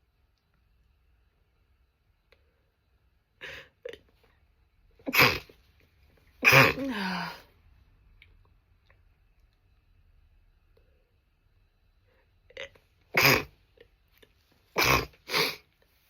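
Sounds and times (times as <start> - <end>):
woman sneezing: 5.1 - 5.5, 6.4 - 7.5.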